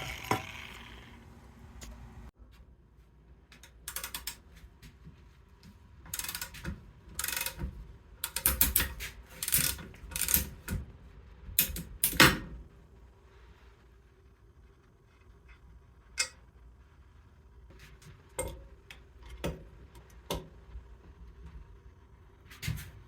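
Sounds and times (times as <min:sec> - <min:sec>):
ratchet wrench clicking: 0:06.1 - 0:06.6, 0:07.2 - 0:07.6, 0:08.2 - 0:10.6.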